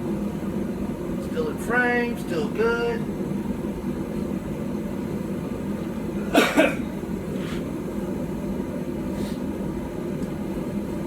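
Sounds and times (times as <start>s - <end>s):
low rumbling background noise: 0.0s - 11.0s
person coughing: 6.3s - 6.8s.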